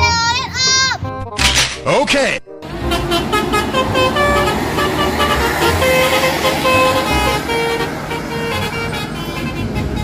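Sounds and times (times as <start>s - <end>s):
low engine rumble: 2.6s - 10.0s
musical bus horn: 2.6s - 10.0s.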